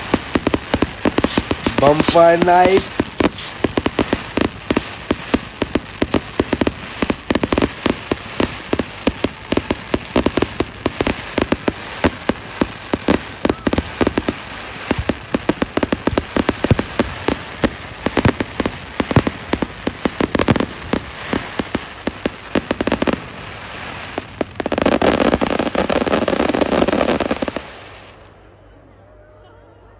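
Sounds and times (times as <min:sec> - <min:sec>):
fireworks popping and banging: 0:00.7 - 0:03.8.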